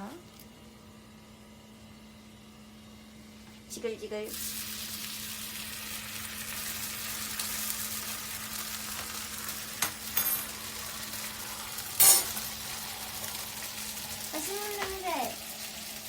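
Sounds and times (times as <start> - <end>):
ham frying in oil: 3.8 - 16.0.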